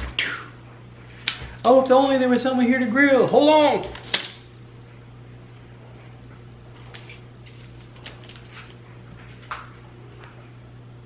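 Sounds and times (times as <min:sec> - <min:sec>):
low electrical hum: 0:00.0 - 0:11.0.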